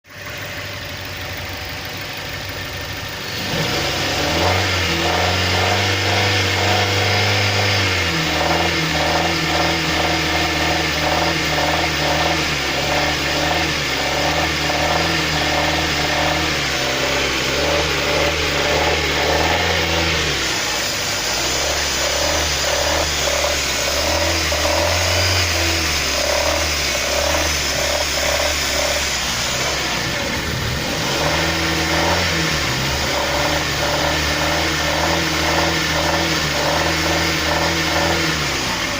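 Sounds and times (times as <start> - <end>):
engine knocking: 0.0 - 6.8, 8.2 - 32.2
car engine revving: 0.1 - 38.9.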